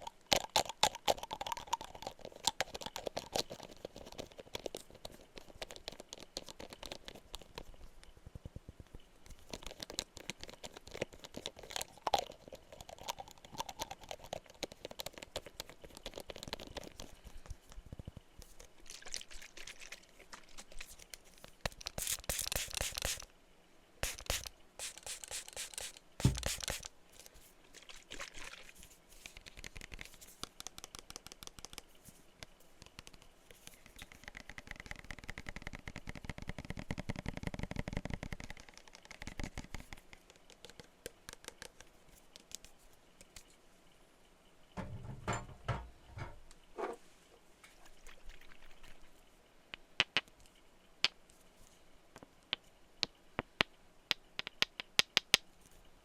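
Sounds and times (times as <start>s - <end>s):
tapping on glass bottles: 44.8s - 46.4s
dull knocks: 44.8s - 47.0s.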